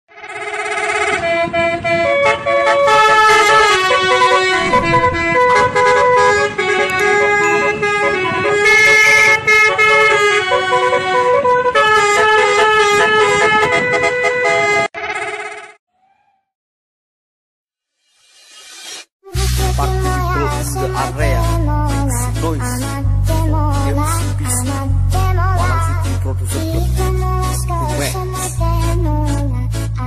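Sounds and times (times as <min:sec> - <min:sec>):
bus horn playing a tune: 0:00.1 - 0:15.8, 0:19.4 - 0:24.8.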